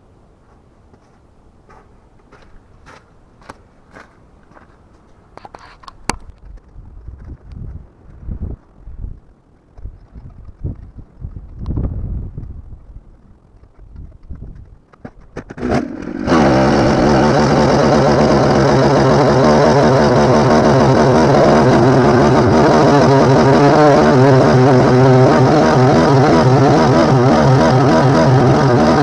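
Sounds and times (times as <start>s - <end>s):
chainsaw engine running: 15.4s - 29.0s
chainsaw pull-start clicks: 15.4s - 29.0s.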